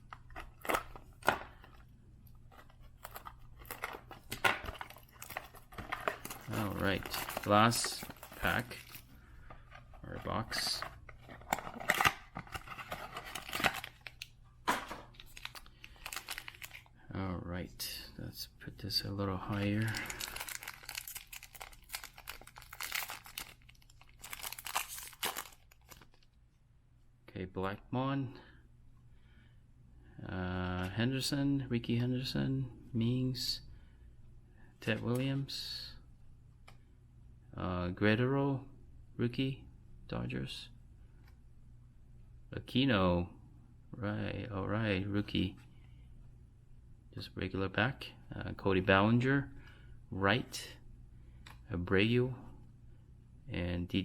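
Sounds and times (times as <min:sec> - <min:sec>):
paper packaging rustling: 0:00.0 - 0:16.9, 0:19.5 - 0:26.2
cards clicking and crinkling: 0:02.5 - 0:09.1, 0:10.5 - 0:16.9, 0:19.5 - 0:26.3.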